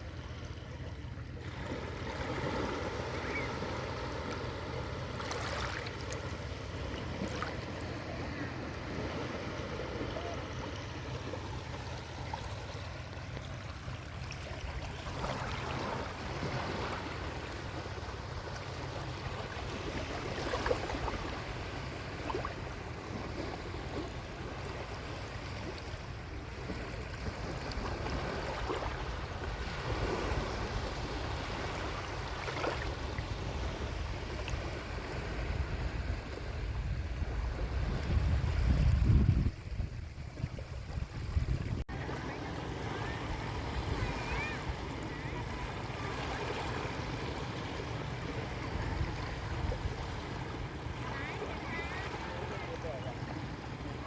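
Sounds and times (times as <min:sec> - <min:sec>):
sea waves washing onto beach: 0:00.0 - 0:54.0
distant voices of people: 0:07.8 - 0:13.2, 0:41.9 - 0:54.0.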